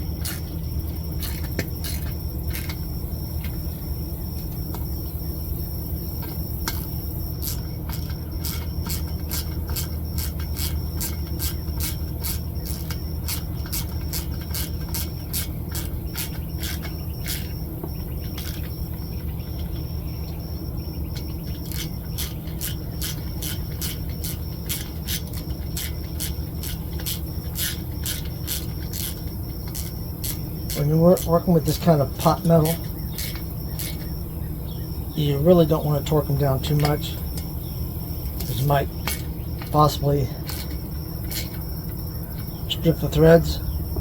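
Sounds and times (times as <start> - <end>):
ratchet clicking: 0.0 - 0.5, 1.1 - 2.8, 6.2 - 17.6, 21.5 - 34.2, 40.4 - 41.7
low steady hum: 0.0 - 44.0.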